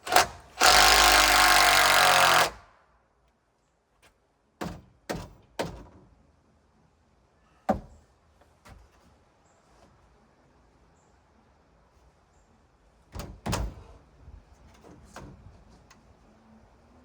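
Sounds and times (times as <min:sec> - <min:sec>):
cordless drill running: 0:00.1 - 0:02.6.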